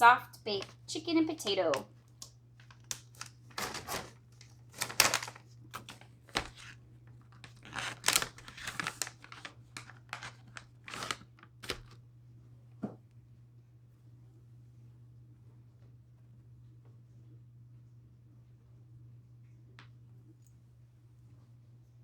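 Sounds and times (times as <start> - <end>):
bag tearing and crinkling: 2.7 - 12.0.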